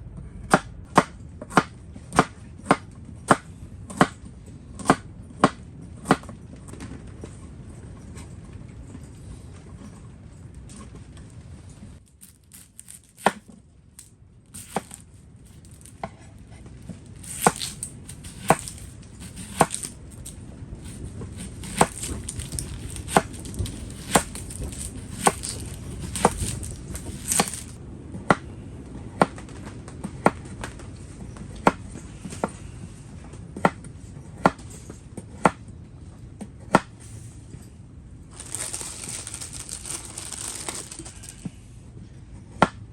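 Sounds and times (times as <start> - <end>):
knife chopping on cutting board: 14.6 - 15.0, 17.2 - 27.8.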